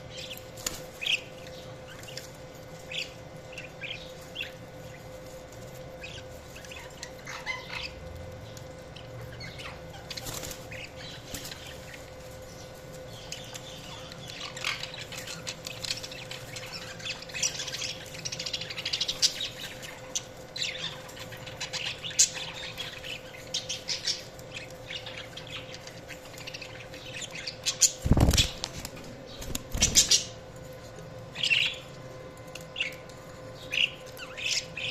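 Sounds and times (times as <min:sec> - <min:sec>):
budgerigars chirping: 0:06.0 - 0:08.0.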